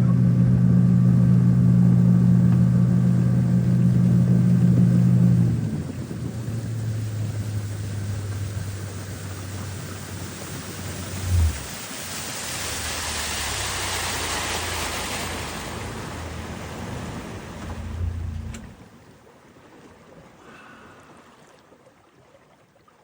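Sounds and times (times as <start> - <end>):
vehicle engine humming: 0.0 - 18.8
rushing wind and road noise: 4.3 - 18.8.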